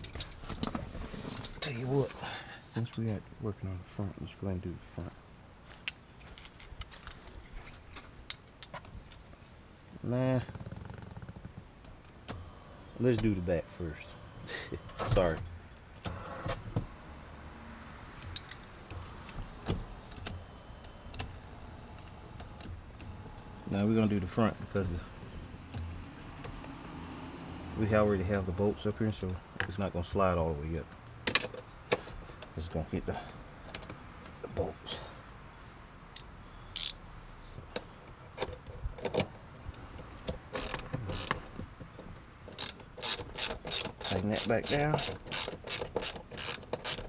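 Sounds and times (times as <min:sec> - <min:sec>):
metallic clicks of tools and bolts: 0:36.2 - 0:37.0.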